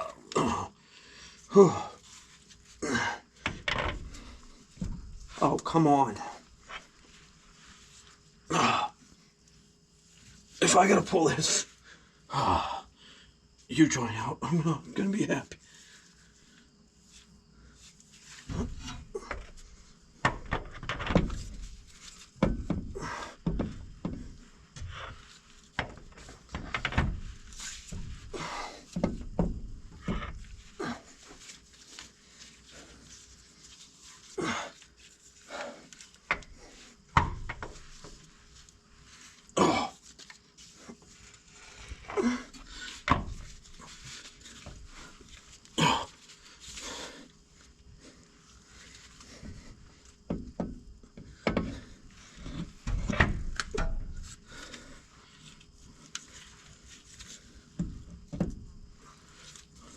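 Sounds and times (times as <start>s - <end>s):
heavy thuds: 3.4s - 5.6s, 18.5s - 30.9s.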